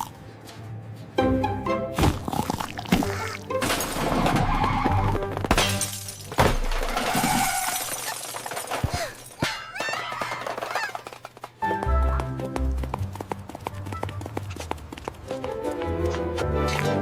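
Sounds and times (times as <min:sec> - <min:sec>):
background music: 0:00.0 - 0:06.4, 0:11.6 - 0:14.2, 0:15.2 - 0:17.0
crashing and shattering effects: 0:02.0 - 0:11.2.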